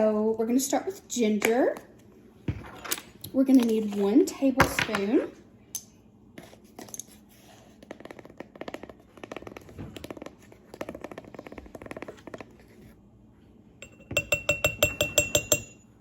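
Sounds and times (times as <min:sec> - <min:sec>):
spoon tapping against dish: 0:13.8 - 0:15.8.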